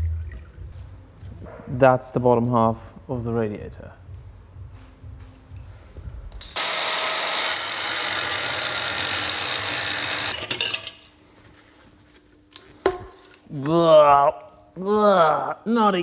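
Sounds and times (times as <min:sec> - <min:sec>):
power tool running: 0:06.6 - 0:10.5.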